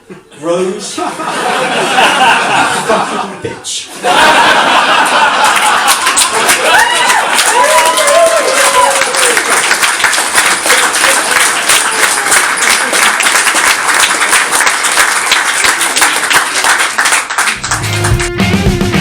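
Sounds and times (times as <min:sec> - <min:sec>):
audience applauding: 0:04.2 - 0:18.8
distorted electric guitar music: 0:17.6 - 0:19.0.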